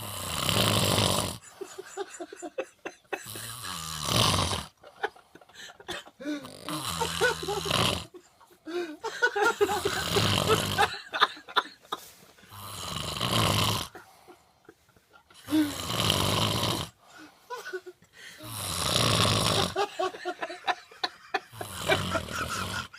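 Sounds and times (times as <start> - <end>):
loud snoring: 0.0 - 1.6, 3.2 - 4.8, 6.4 - 8.1, 9.6 - 10.9, 12.5 - 14.0, 15.4 - 17.0, 18.4 - 19.9, 21.5 - 22.9.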